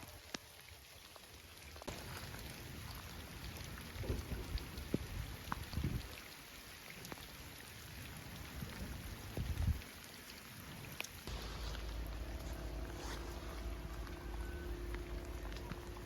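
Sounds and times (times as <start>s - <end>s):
steady rain falling: 0.0s - 16.0s
low rumbles: 11.3s - 16.0s.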